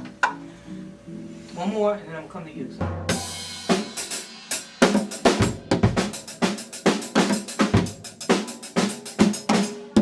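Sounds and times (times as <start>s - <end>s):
drum strokes: 2.8s - 10.0s.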